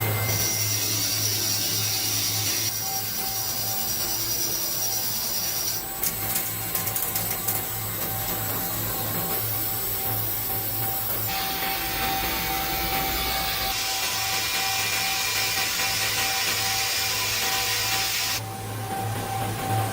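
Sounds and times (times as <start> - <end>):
cnc machine cutting: 0.0 - 19.9
steady machine hum: 5.9 - 19.9.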